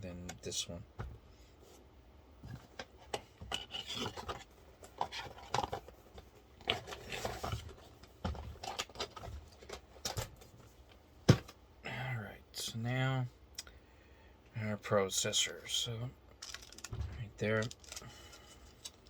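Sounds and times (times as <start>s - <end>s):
rubbing and scraping of packaging: 2.5s - 10.6s, 16.4s - 19.0s.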